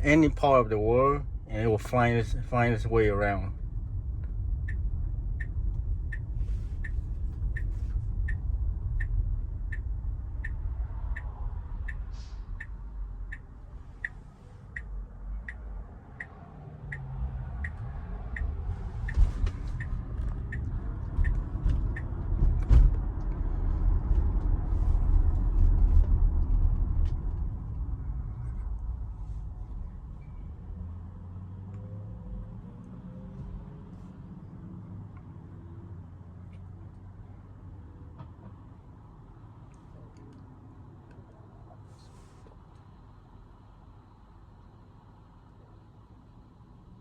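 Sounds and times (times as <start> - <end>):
turn signal ticking: 0.0 - 30.9
car cabin road noise: 0.0 - 47.0.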